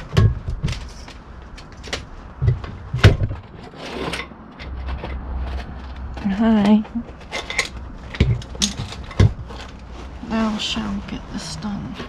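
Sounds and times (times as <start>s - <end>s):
tools knocking on metal: 0.0s - 1.0s, 2.3s - 3.4s, 6.1s - 9.7s.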